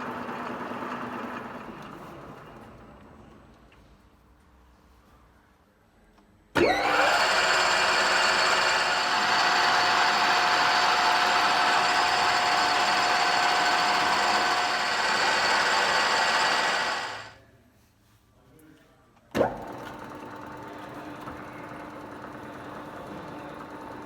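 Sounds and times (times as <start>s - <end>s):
lathe running with whine: 6.6s - 17.4s.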